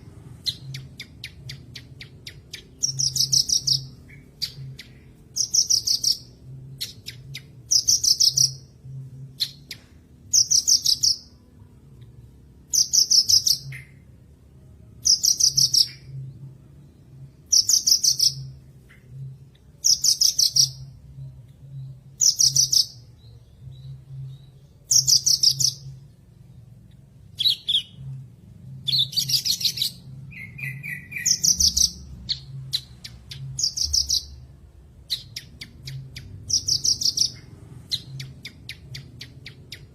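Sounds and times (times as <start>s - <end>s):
lark song trills: 0.0s - 11.4s, 27.2s - 39.9s.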